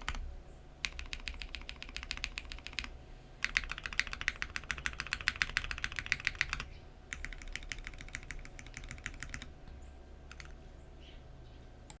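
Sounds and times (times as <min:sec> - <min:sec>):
mechanical keyboard typing: 0:00.0 - 0:00.2, 0:00.8 - 0:09.5, 0:10.3 - 0:10.6.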